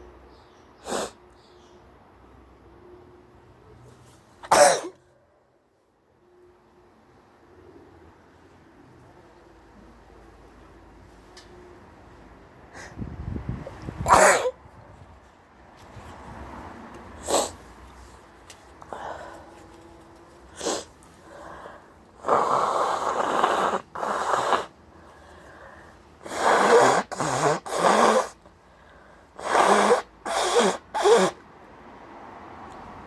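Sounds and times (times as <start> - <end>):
person sneezing: 4.4 - 5.0, 14.1 - 14.6, 17.2 - 17.6, 29.4 - 31.4.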